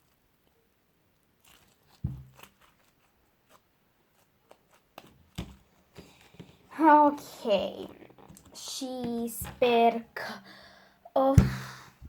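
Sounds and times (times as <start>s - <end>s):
slime crackling and popping: 1.4s - 5.6s
dull thump: 2.0s - 2.3s, 11.4s - 11.8s.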